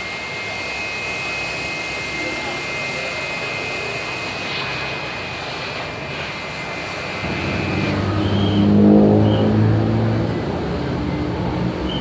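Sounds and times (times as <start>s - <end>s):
high-pitched whine: 7.1s - 12.0s
low engine hum: 7.2s - 12.0s.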